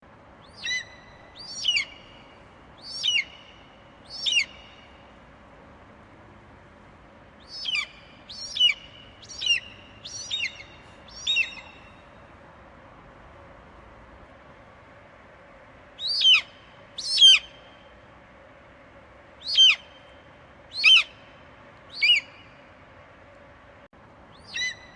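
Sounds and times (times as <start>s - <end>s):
faint steady hiss: 0.0s - 24.9s
eagle calling: 0.4s - 5.0s, 7.4s - 12.0s, 16.0s - 17.6s, 19.4s - 20.0s, 20.7s - 21.3s, 21.9s - 22.6s, 24.4s - 24.9s.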